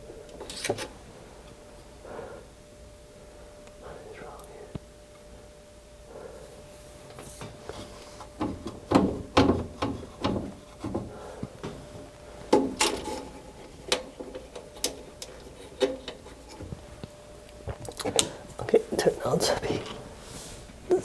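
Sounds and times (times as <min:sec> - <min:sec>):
faint steady hum: 0:00.0 - 0:21.0
tools and metal parts clanking: 0:00.3 - 0:01.0, 0:07.2 - 0:17.1.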